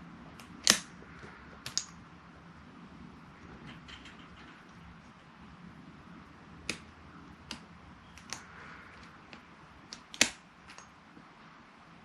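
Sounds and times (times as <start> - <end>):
sharp metallic clicks: 0.4 - 2.0, 6.6 - 11.0.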